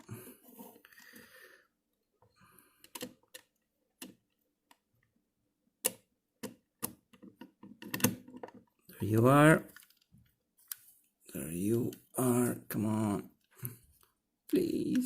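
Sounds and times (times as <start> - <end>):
plastic controller parts clicking: 5.8 - 10.8.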